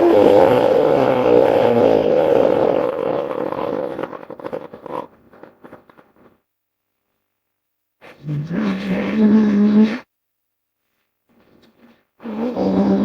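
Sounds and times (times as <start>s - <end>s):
creature roar: 0.0s - 5.1s.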